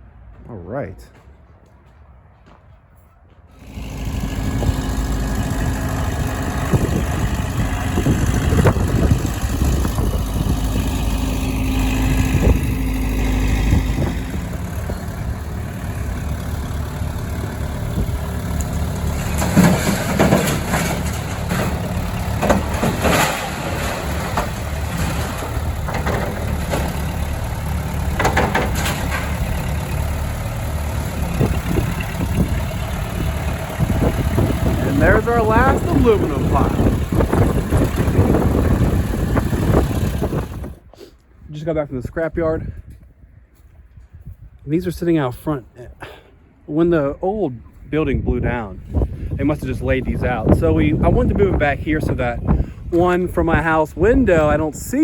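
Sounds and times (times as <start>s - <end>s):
machine engine whining: 3.6s - 40.8s
sharp knocks and clatter: 18.2s - 29.8s.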